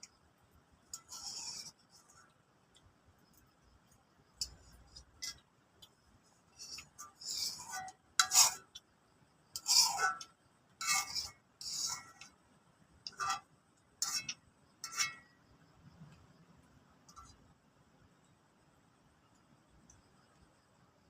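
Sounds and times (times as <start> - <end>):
spoon scraping and clinking on plate: 0.9 - 2.2, 6.6 - 8.8, 9.6 - 12.3, 13.1 - 15.3.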